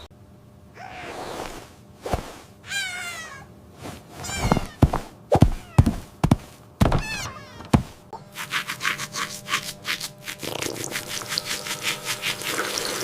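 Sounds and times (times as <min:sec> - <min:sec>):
faint steady hum: 0:00.0 - 0:13.0
fast rhythmic scrubbing strokes: 0:08.3 - 0:13.0.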